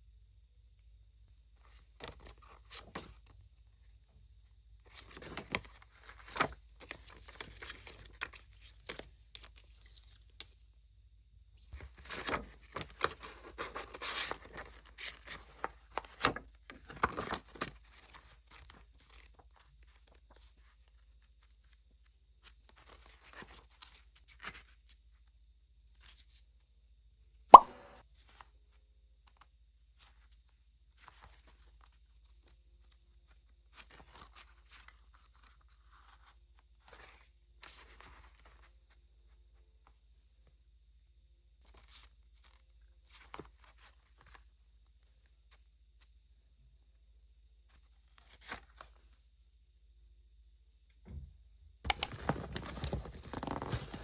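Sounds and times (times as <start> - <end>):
packaging tearing and rustling: 51.9 - 54.0.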